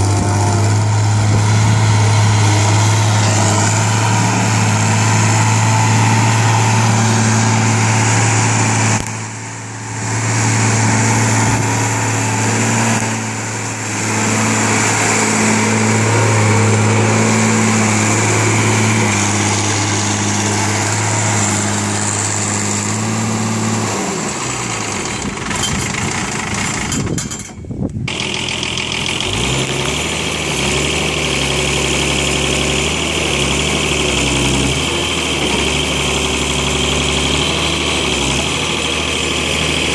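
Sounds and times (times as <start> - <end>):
backhoe engine running: 0.0 - 39.9.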